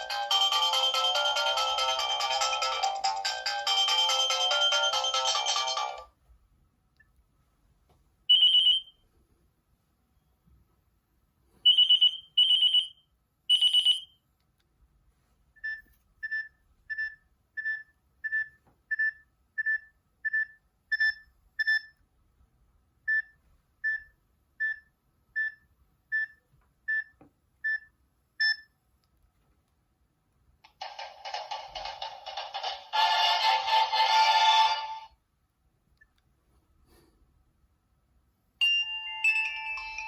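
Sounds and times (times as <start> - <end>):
phone ringtone notes: 0.0 - 6.1, 38.6 - 40.0.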